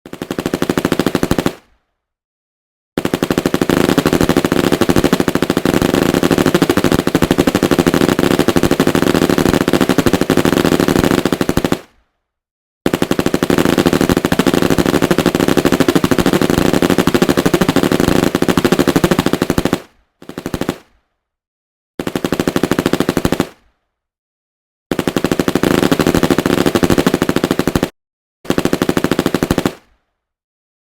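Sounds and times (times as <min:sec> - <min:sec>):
submachine gun automatic bursts: 0:00.1 - 0:01.8, 0:03.0 - 0:12.0, 0:12.9 - 0:21.0, 0:22.0 - 0:23.7, 0:24.9 - 0:30.0.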